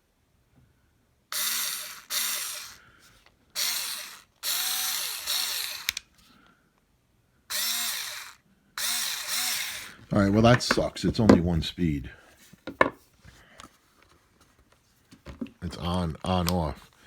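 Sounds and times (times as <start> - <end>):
cordless screwdriver motor spinning: 1.3 - 2.8, 3.6 - 6.1, 7.5 - 10.1.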